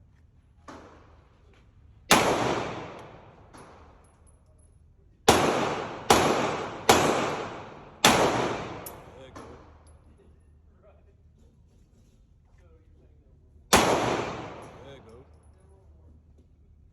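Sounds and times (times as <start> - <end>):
pistol shots echoing: 2.1 - 4.0, 5.3 - 9.8, 13.7 - 15.1.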